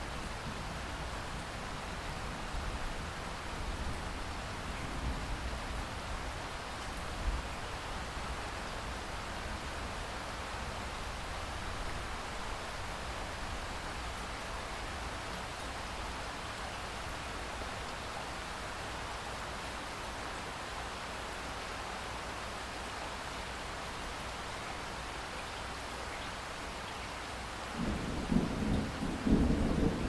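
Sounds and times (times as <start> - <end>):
steady rain falling: 0.0 - 30.0.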